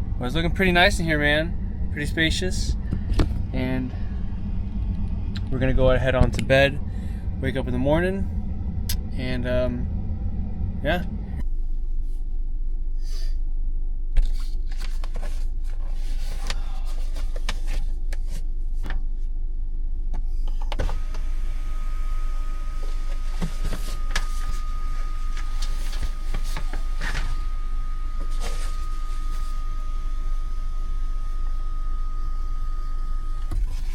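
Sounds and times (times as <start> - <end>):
climate fan blowing: 0.0 - 11.4
faint steady tone: 21.0 - 33.8.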